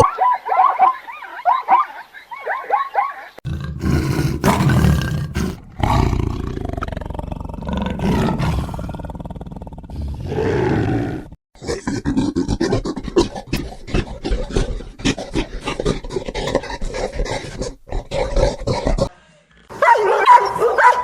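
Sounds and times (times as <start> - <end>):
big cat roaring growl: 3.4 - 19.1.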